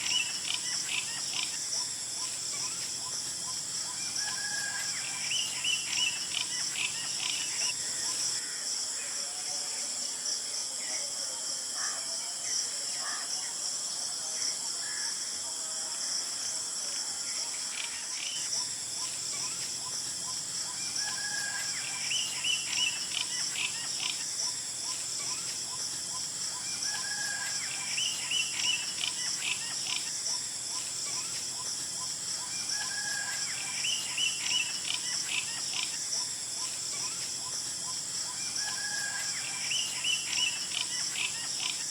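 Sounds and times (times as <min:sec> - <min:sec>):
high-pitched insect buzzing: 0:00.0 - 0:08.4, 0:17.7 - 0:41.9.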